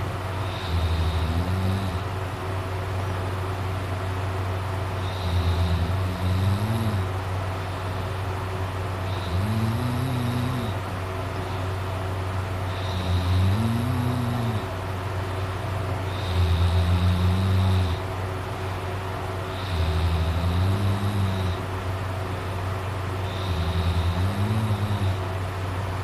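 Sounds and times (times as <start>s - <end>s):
steady background hum: 0.0s - 26.0s
person snoring: 0.4s - 2.1s, 5.0s - 7.2s, 9.1s - 10.8s, 12.7s - 14.7s, 16.1s - 18.1s, 19.5s - 21.6s, 23.2s - 25.2s.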